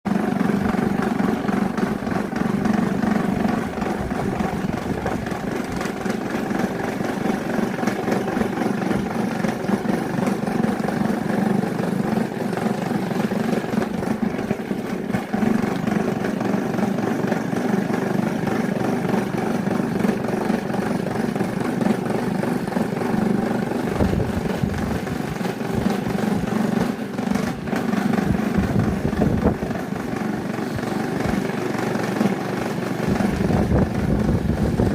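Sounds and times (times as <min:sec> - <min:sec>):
electric fan motor humming: 0:00.1 - 0:34.9.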